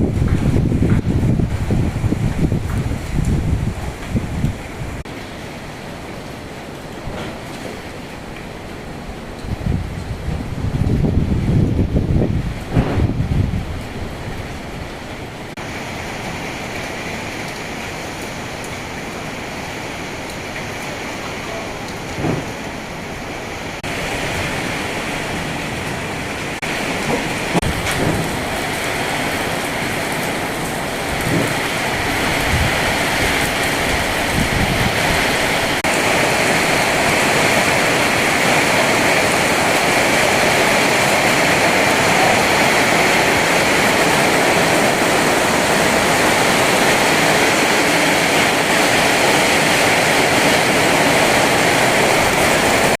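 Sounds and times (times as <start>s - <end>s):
heavy rain: 0.0s - 53.0s
strong wind: 0.0s - 53.0s
low rumbling: 9.0s - 15.6s.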